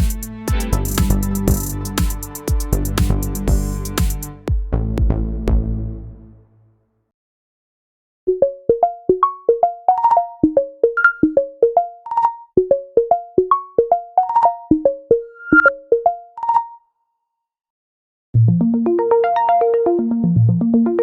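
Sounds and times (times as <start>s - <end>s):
phone ringtone melody: 8.3s - 16.8s, 18.9s - 20.2s.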